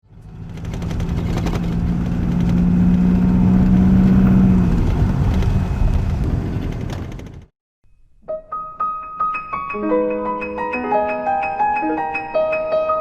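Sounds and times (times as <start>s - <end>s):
vehicle engine running: 0.1s - 7.5s.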